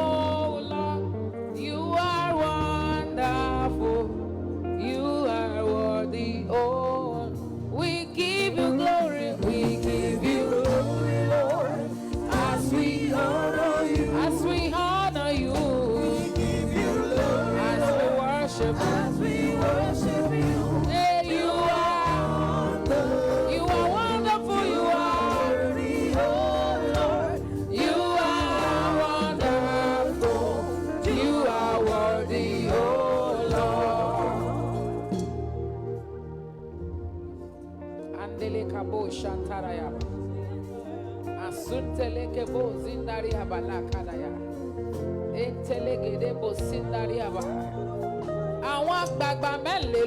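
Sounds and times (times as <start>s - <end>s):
gospel choir singing with band: 0.0s - 37.5s.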